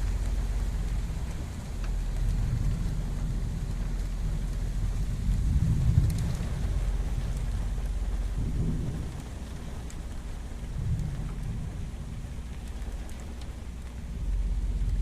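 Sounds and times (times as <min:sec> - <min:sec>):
rain falling: 0:00.0 - 0:15.0
thunder rumble: 0:00.0 - 0:15.0.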